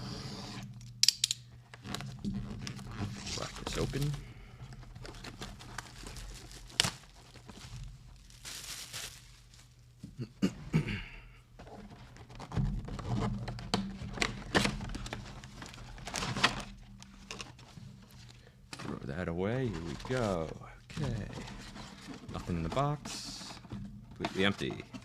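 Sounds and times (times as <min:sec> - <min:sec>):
plastic wrap crinkling: 0:01.7 - 0:10.0, 0:14.4 - 0:18.5, 0:19.5 - 0:25.0
plastic tearing rip: 0:05.0 - 0:07.5.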